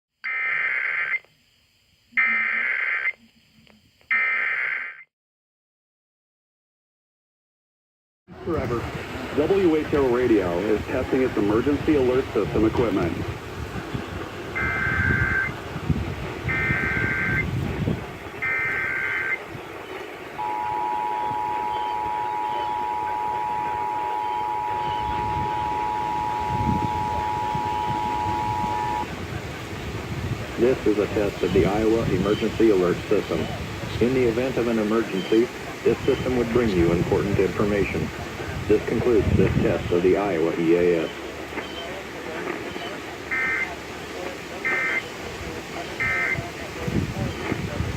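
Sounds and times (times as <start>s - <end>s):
buzzy digital data tones: 0.3s - 5.0s, 14.5s - 15.6s, 16.4s - 17.6s, 18.4s - 19.4s, 20.4s - 29.1s
low background noise: 8.3s - 47.8s.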